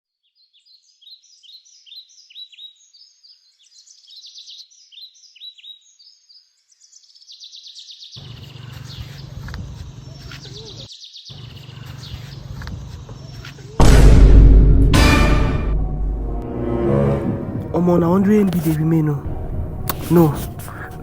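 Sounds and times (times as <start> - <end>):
small bird chirping: 0.2 - 13.8.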